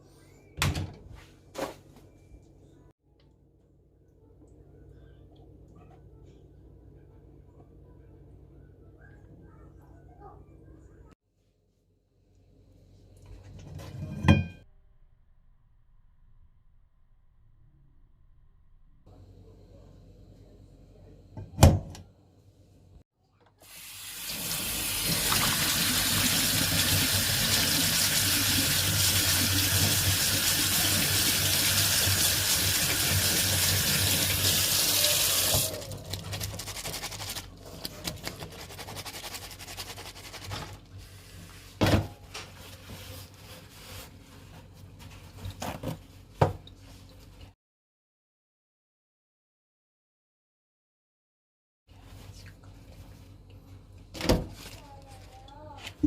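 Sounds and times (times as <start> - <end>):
tap water running into sink: 23.6 - 35.8.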